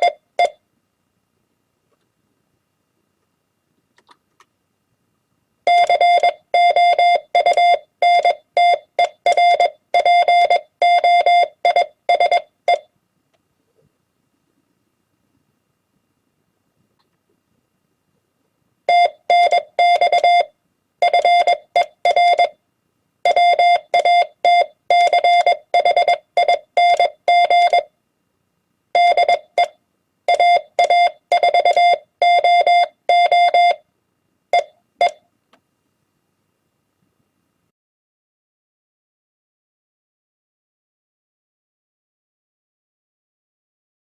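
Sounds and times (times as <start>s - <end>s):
morse code beeps: 0.0s - 0.6s, 5.7s - 12.9s, 18.9s - 22.6s, 23.3s - 27.9s, 29.0s - 33.8s, 34.6s - 35.2s.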